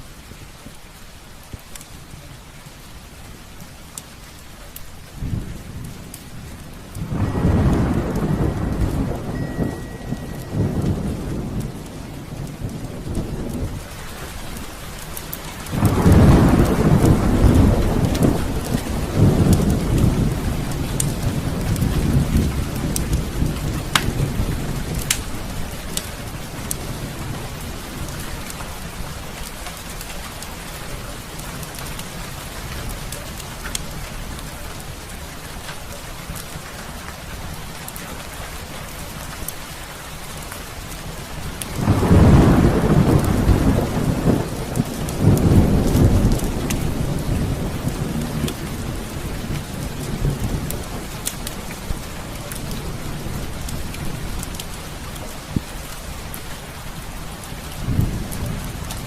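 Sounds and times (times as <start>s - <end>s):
heavy rain: 0.0s - 59.0s
wood fire crackling: 0.0s - 59.0s
thunder rolling: 5.1s - 14.8s, 15.5s - 28.4s, 41.6s - 55.8s.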